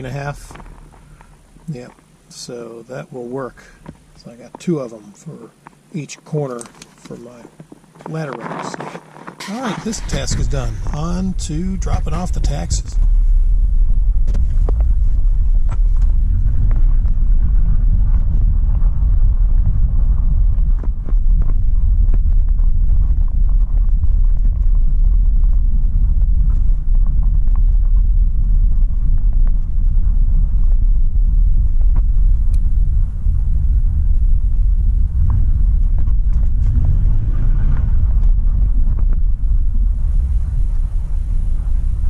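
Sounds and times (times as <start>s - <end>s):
truck engine and road noise: 9.4s - 21.7s, 31.6s - 42.0s.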